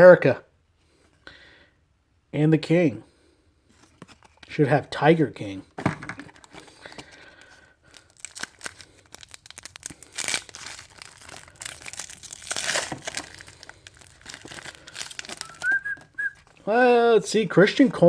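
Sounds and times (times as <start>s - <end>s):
wrapper tearing and crinkling: 6.3s - 16.7s.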